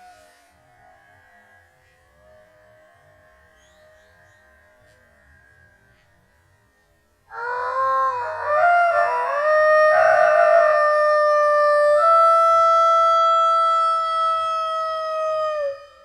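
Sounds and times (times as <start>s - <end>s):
slowed rooster crow: 7.3s - 16.0s.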